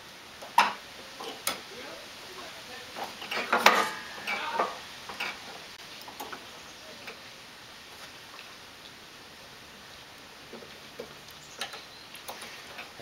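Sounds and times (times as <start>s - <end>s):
wrench and metal parts clattering: 3.0s - 5.4s.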